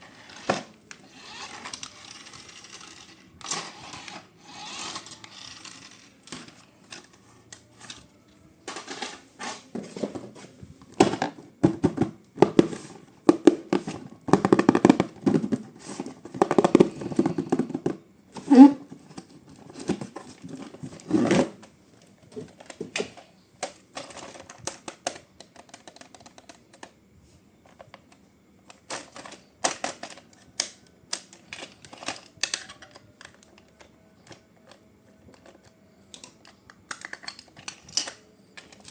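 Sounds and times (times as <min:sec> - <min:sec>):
toy and packaging clicks and rattles: 0:00.0 - 0:09.6, 0:22.0 - 0:27.0, 0:27.6 - 0:38.9.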